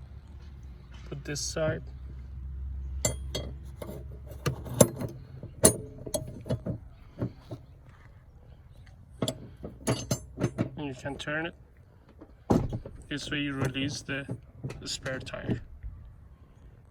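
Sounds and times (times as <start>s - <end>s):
metal tool clinks and clicks: 3.0s - 6.7s, 9.2s - 10.8s.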